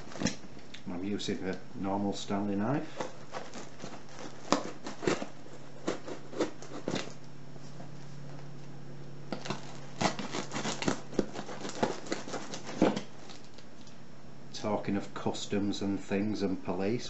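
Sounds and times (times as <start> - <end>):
knife cutting cardboard and tape: 2.9 - 7.2, 9.3 - 13.6.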